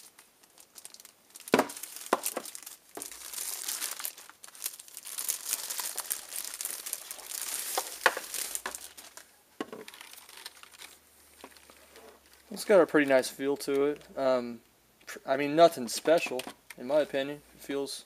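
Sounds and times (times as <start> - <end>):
packaging crinkling and rustling: 0.0 - 12.7.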